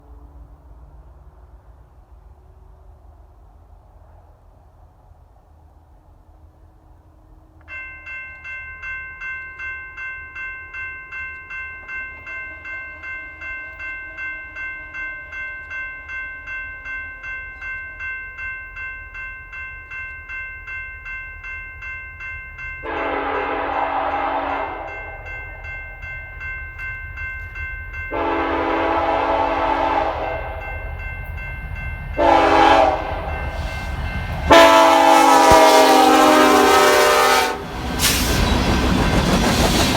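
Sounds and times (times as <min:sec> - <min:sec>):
electronic crossing bell ringing: 0:07.7 - 0:36.0
locomotive horn blasts: 0:22.8 - 0:25.3, 0:28.1 - 0:30.7, 0:32.2 - 0:33.4, 0:34.5 - 0:37.7.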